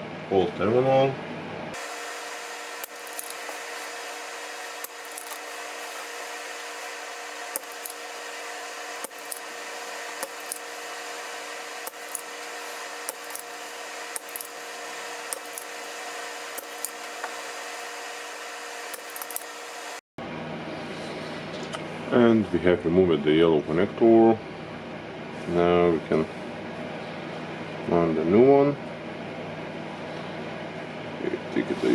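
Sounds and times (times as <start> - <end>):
small tools clicking and tapping: 1.8 - 20.0
workshop equipment whirring hum: 1.8 - 20.1.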